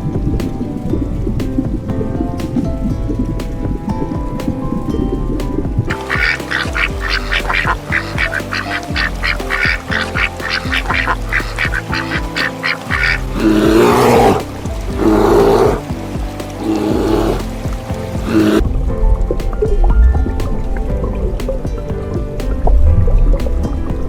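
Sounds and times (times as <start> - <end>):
background music: 0.0 - 24.0
ducks calling: 5.9 - 18.6.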